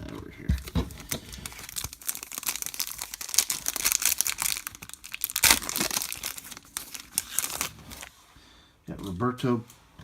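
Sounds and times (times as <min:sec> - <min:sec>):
wrapper crinkling: 0:00.6 - 0:08.1.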